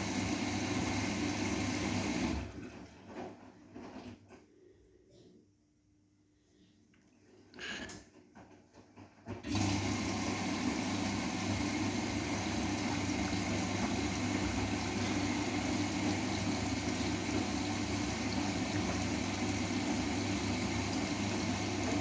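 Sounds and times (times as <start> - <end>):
water rushing into washing machine: 0.0 - 4.2, 9.3 - 22.0.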